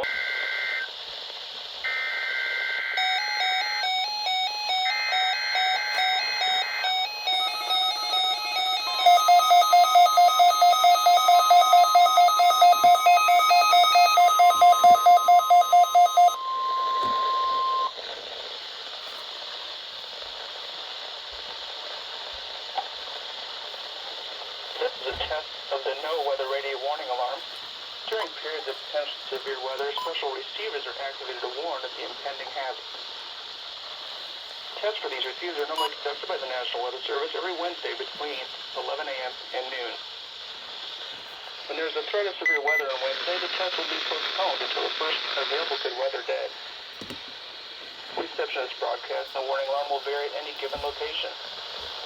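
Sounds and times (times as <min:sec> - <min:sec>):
radio static hiss: 0:00.0 - 0:03.1, 0:04.5 - 0:52.0
steady alarm tone: 0:01.9 - 0:17.9
rapid electronic beeping: 0:03.0 - 0:17.9.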